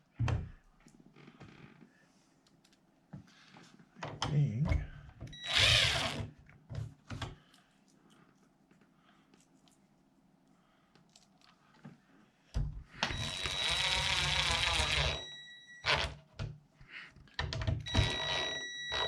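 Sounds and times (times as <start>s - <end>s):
power drill driving screw: 5.4s - 6.3s, 13.1s - 16.2s, 17.9s - 19.0s.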